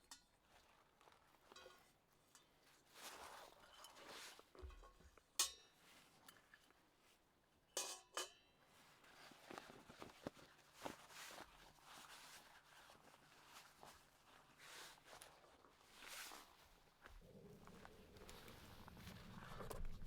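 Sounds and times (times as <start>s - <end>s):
metal cookware clinking: 7.8s - 8.4s
rustling: 8.7s - 20.0s.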